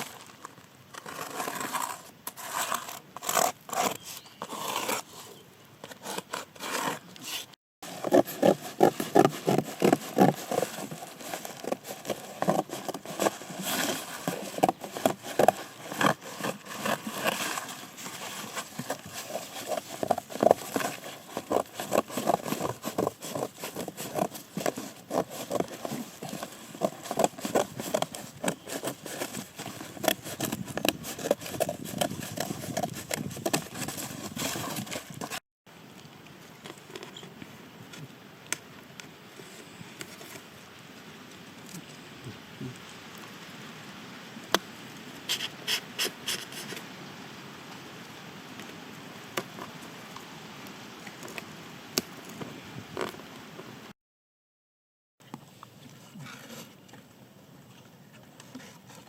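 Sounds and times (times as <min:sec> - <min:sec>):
hand tool scraping and tapping: 0:05.9 - 0:35.4.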